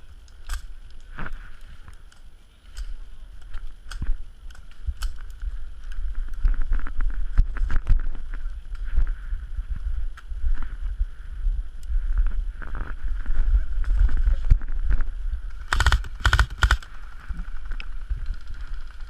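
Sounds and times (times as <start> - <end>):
wind buffeting microphone: 4.0 - 19.0.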